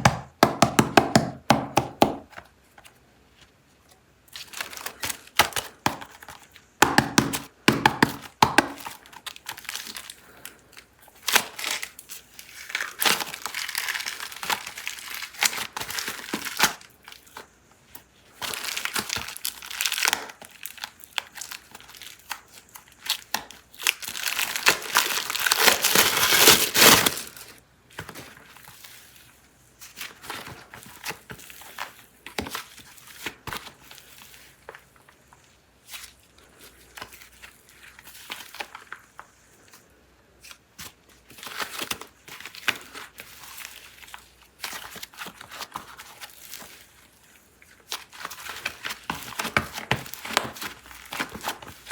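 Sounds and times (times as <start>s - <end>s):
plastic packaging crinkling: 8.2s - 39.9s.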